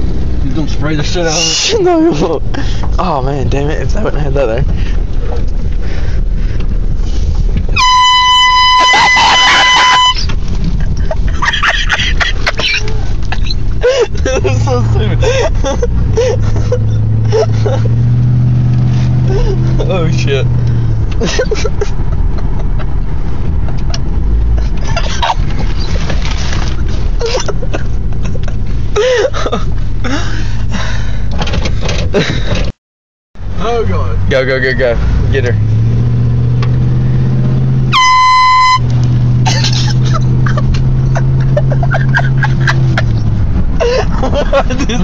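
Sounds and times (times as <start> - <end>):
vehicle engine rumble: 0.0 - 32.8, 33.4 - 45.0
high-pitched air horn blast: 7.8 - 10.3, 37.9 - 38.9.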